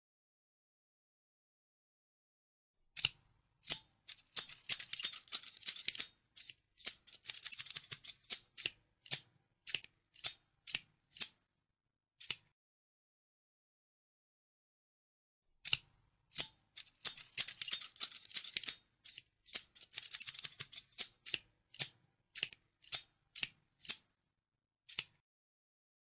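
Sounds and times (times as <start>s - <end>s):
scissors snipping: 3.0s - 11.4s, 12.2s - 12.5s, 15.6s - 24.1s, 24.9s - 25.2s.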